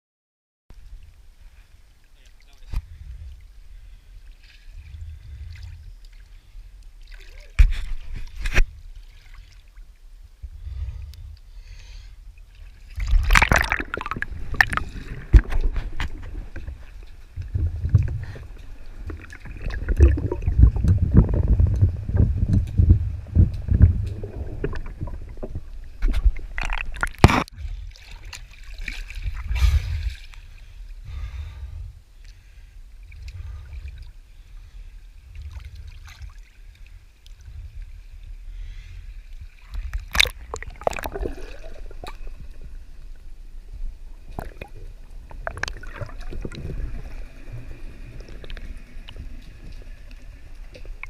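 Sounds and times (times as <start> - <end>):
wind rumbling on microphone: 2.5 - 6.8, 9.7 - 11.6, 12.2 - 32.2, 32.8 - 51.0
water sloshing against boat hull: 12.5 - 30.4.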